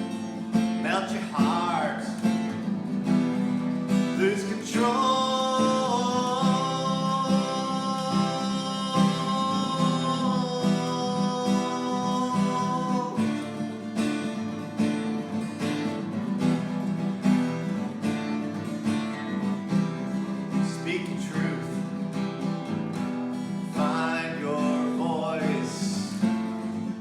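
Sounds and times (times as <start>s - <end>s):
acoustic guitar strumming: 0.0s - 27.0s
person singing a long note: 4.8s - 13.3s.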